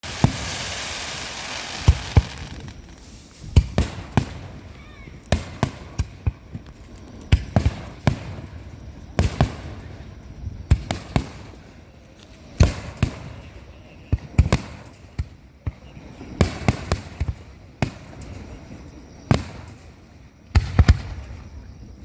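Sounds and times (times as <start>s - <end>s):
firework hiss: 0.0s - 8.6s
firework shells booming: 0.0s - 11.8s.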